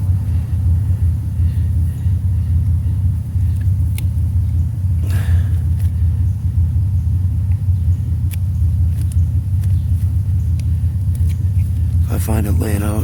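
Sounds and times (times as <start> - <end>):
vehicle engine idling: 0.0 - 13.0
light clicks: 3.4 - 4.6, 7.4 - 11.9.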